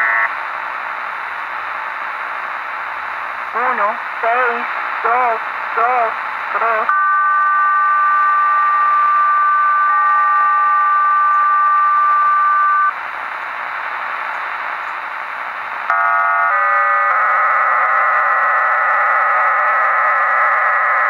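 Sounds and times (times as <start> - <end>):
radio hiss: 0.0 - 21.0
steady two-tone radio signal: 0.0 - 21.0.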